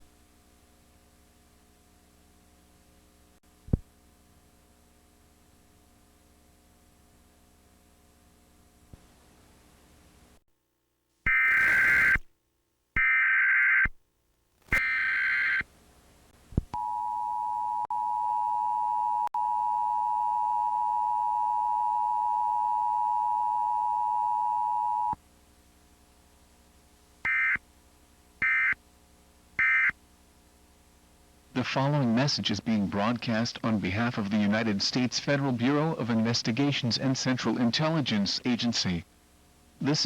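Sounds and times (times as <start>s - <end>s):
digital data bursts: 11.3s - 12.2s.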